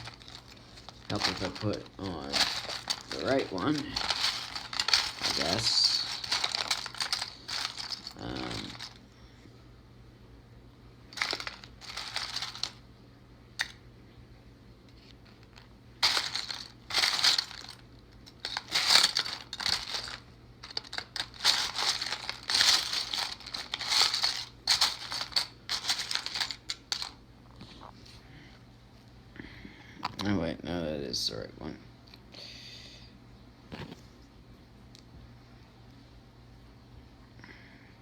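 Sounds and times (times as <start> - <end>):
plastic toy parts rattling: 0.0 - 9.0, 11.1 - 12.8, 13.6 - 13.8, 15.0 - 27.2.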